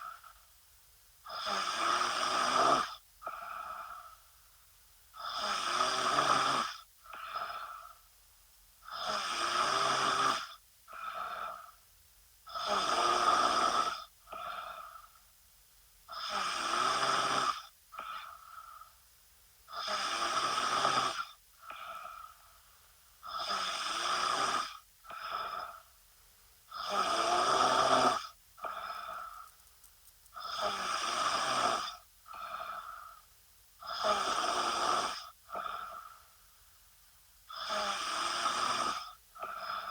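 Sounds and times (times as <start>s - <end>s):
woman snoring: 1.3s - 4.2s, 5.2s - 8.0s, 8.8s - 11.8s, 12.5s - 15.1s, 16.1s - 18.9s, 19.7s - 22.4s, 23.2s - 25.9s, 26.7s - 29.5s, 30.4s - 33.2s, 33.8s - 36.2s, 37.5s - 39.9s.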